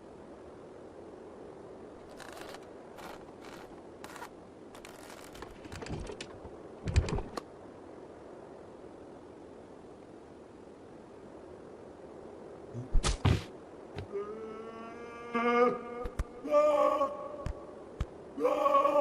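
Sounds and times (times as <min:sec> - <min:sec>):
soft clicks and rustles: 0:02.0 - 0:07.5.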